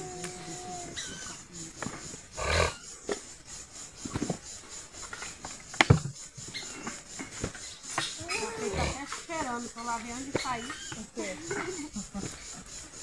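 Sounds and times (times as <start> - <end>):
animal call: 0.0 - 3.0, 8.0 - 9.2.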